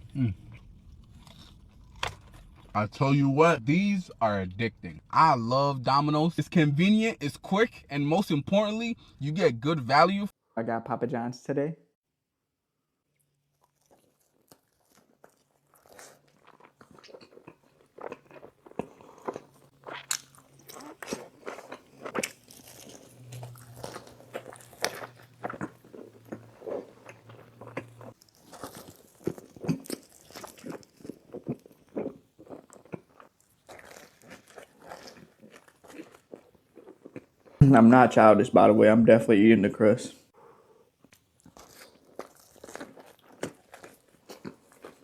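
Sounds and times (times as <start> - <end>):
crunchy biting and chewing: 0.1 - 2.8, 13.5 - 37.6, 41.0 - 45.0.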